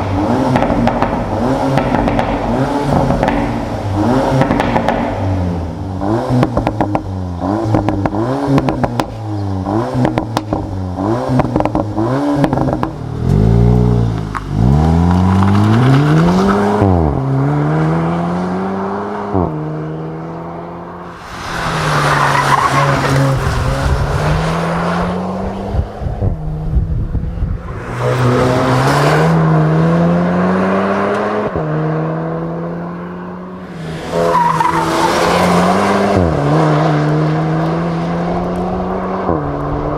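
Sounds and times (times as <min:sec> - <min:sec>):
car exhaust revving with pops: 0:00.0 - 0:17.2
car accelerating through gears: 0:27.7 - 0:39.9.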